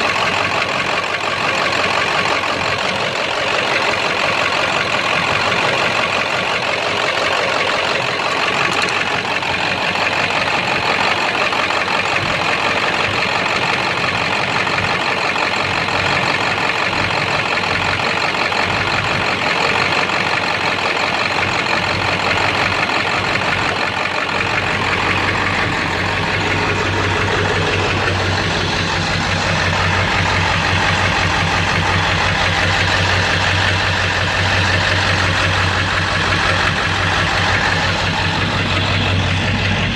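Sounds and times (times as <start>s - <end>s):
diesel engine idling roughly: 0.0s - 39.9s
engine knock: 0.0s - 39.9s
deep steady hum: 22.6s - 39.9s.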